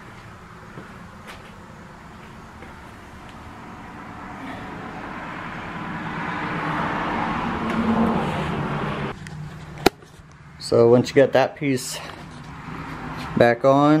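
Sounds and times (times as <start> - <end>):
vehicle approaching: 0.0 - 14.0.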